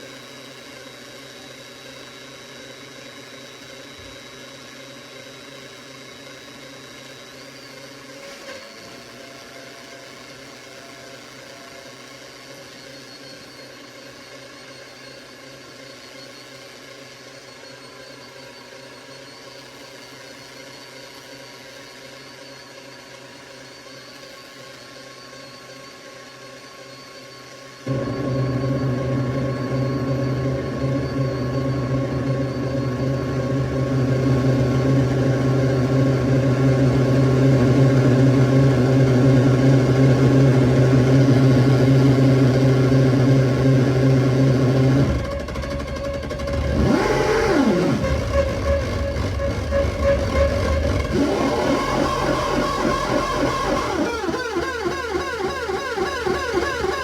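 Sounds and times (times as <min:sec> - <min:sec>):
faint held tones: 0:27.9 - 0:57.0.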